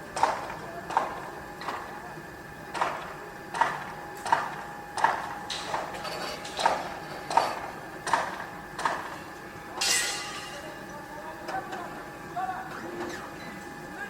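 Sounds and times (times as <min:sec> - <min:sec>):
steady machine hum: 0:00.0 - 0:14.0
sharp metallic knocks: 0:09.8 - 0:10.6.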